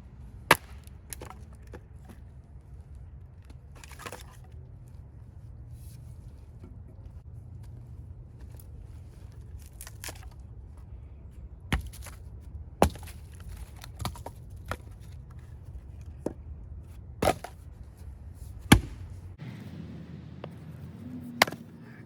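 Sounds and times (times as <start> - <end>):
axe splitting firewood: 0.4 - 1.8, 11.7 - 12.2, 12.8 - 15.0, 17.2 - 17.7, 18.5 - 19.2.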